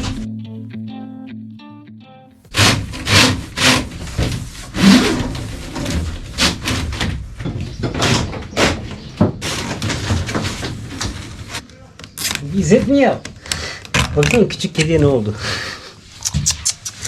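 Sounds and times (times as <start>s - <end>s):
knocks and bangs: 2.5s - 11.3s
scraping rustles: 2.5s - 11.6s.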